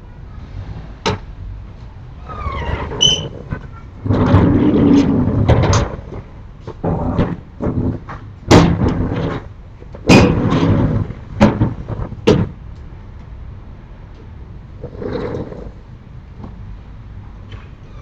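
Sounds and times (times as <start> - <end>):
wooden shutters knocking and rattling: 4.1 - 12.6.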